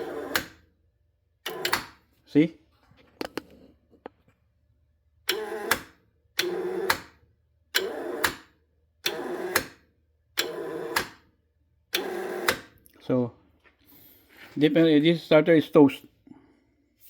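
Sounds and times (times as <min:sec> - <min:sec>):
starter motor clicking and whirring: 0:00.0 - 0:00.7, 0:01.4 - 0:02.0, 0:05.2 - 0:12.8.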